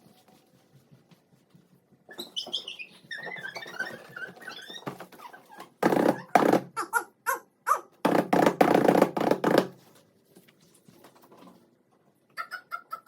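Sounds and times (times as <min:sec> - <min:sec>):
dog whining in squeaky yelps: 0:06.8 - 0:08.0.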